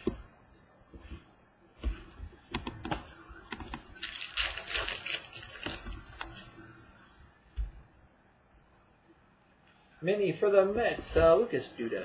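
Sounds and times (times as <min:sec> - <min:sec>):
cards shuffling: 0:01.9 - 0:06.5.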